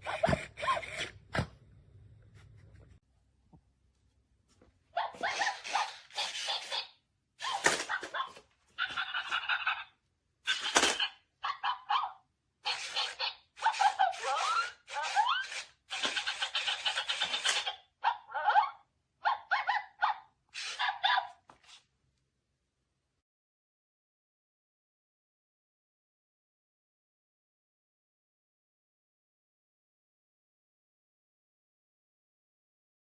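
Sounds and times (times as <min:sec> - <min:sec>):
robot dog toy barking: 0:00.0 - 0:01.5, 0:05.0 - 0:09.9, 0:10.5 - 0:21.4.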